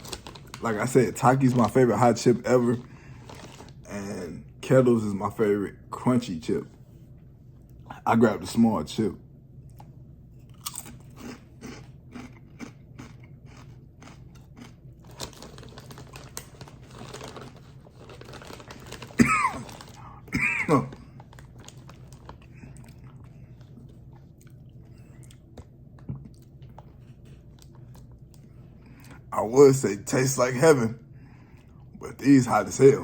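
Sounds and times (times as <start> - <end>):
chewing crunchy chip: 0.0 - 1.8, 9.7 - 28.4
person coughing: 19.1 - 21.1.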